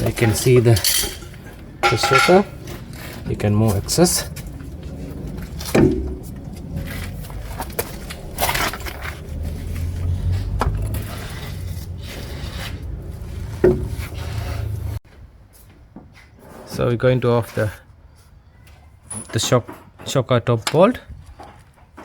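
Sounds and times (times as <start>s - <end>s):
metal tools knocking and scraping: 0.0s - 2.8s.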